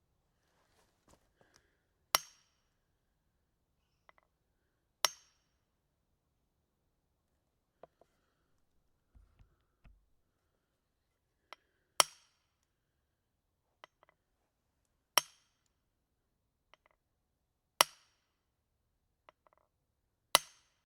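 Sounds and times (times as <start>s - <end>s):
light taps: 8.6s - 10.2s.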